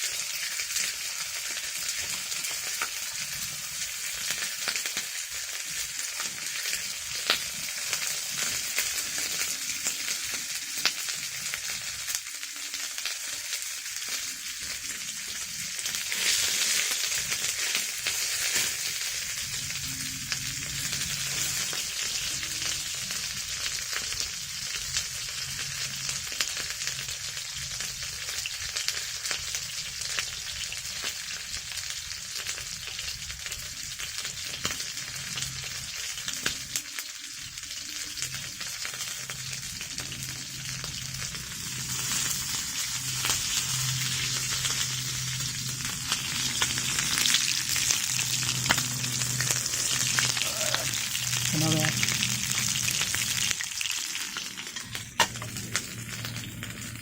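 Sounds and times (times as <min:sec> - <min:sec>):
meat sizzling in oil: 0:00.0 - 0:57.0.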